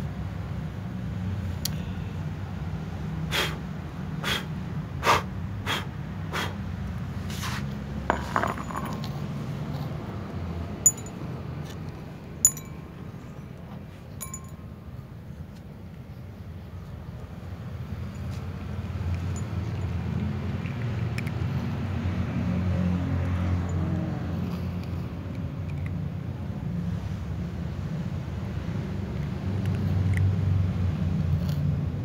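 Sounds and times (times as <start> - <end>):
dish clinking: 10.9 - 11.2, 12.5 - 12.8.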